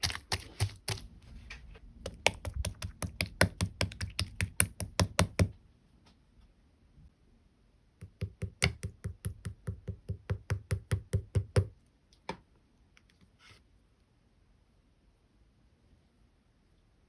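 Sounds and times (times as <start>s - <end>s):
fingers patting slime: 0.0s - 1.1s, 2.0s - 5.6s, 8.0s - 11.7s.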